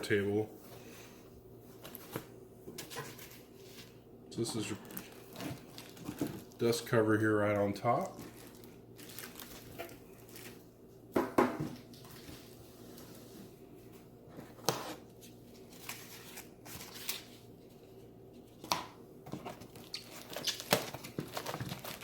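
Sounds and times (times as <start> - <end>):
packaging rustling and crinkling: 1.8 - 10.7, 19.3 - 22.0
packaging knocks and scrapes: 4.5 - 6.6.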